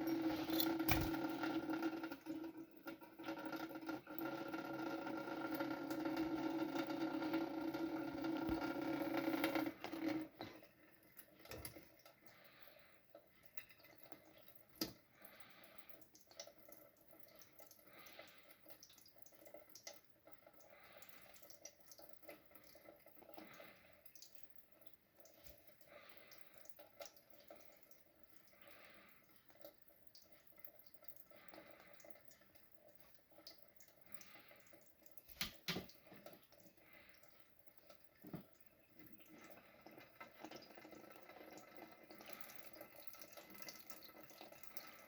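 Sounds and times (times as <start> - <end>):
soft water splashes in sink: 0.0 - 45.0
water running from tap: 0.0 - 45.0.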